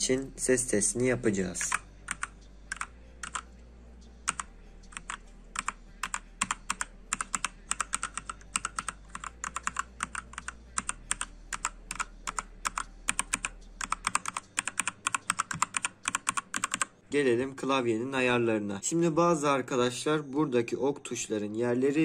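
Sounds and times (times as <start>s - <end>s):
mechanical keyboard typing: 1.6s - 3.5s, 4.3s - 17.0s.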